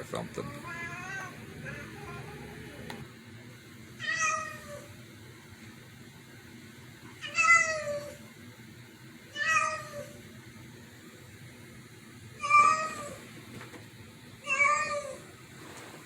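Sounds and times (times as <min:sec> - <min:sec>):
cat meowing: 0:00.5 - 0:02.9, 0:04.0 - 0:04.9, 0:07.2 - 0:08.2, 0:09.3 - 0:10.2, 0:12.4 - 0:13.2, 0:14.4 - 0:15.2.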